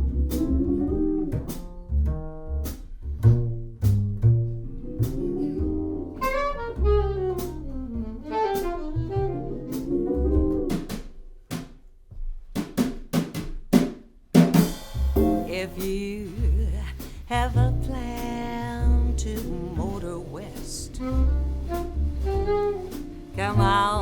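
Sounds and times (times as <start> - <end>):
bass: 0.0 - 12.8, 14.3 - 24.0
drum kit: 0.0 - 24.0
saxophone melody: 5.9 - 10.6, 20.9 - 24.0.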